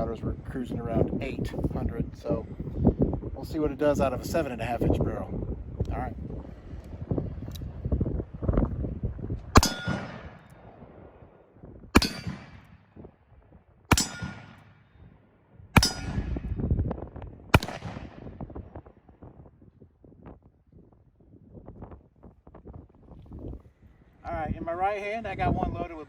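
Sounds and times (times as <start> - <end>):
revolver gunshots: 9.6 - 11.0, 11.9 - 13.0, 13.9 - 15.0, 15.8 - 16.6, 17.5 - 18.4.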